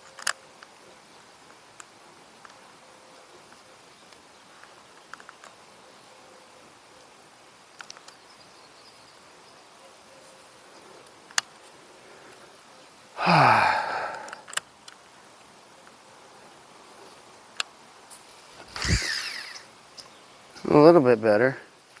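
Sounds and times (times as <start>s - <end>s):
light clicks: 3.5s - 5.6s, 7.7s - 8.2s, 11.0s - 12.4s, 14.1s - 15.1s
man sighing: 13.2s - 14.5s.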